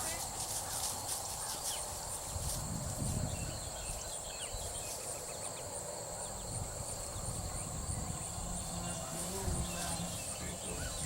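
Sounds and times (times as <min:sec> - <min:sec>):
insects pulsing trill: 0:00.0 - 0:11.0
low rumbling noise: 0:06.4 - 0:11.0.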